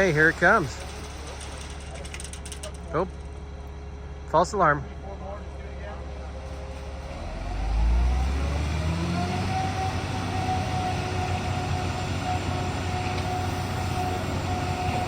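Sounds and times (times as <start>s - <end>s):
steady mechanical whine: 0.0s - 15.0s
truck diesel engine revving: 7.0s - 15.0s.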